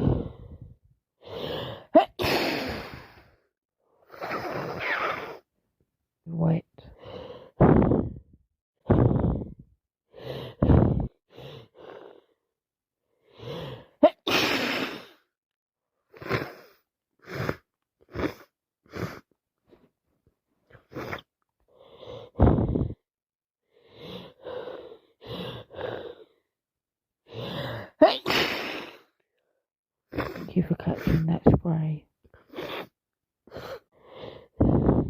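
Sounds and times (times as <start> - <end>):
person sniffling: 0.0 - 0.6, 27.4 - 29.1, 30.1 - 31.2
person sneezing: 14.0 - 15.1, 28.0 - 29.0.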